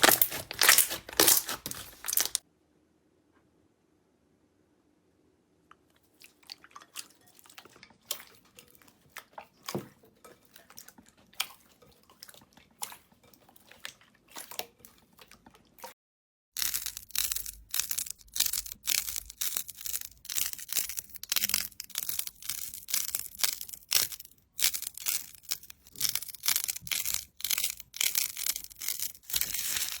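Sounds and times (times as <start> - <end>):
slime crackling by hand: 0.0 - 2.4, 16.6 - 30.0.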